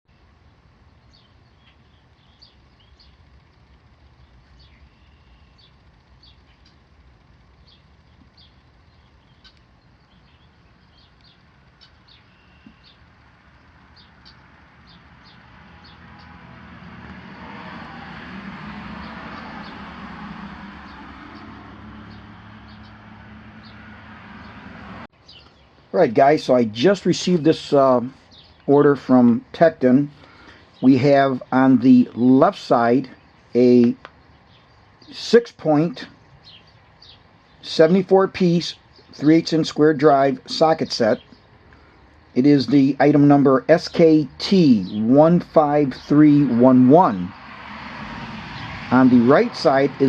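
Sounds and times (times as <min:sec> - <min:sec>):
small birds chirping: 0:00.1 - 0:18.0, 0:18.7 - 0:47.5
vehicle passing: 0:10.2 - 0:50.0.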